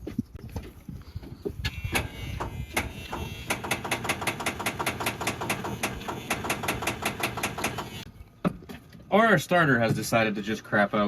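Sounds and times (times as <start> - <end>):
starter solenoid rapid clicking: 1.7 - 8.1.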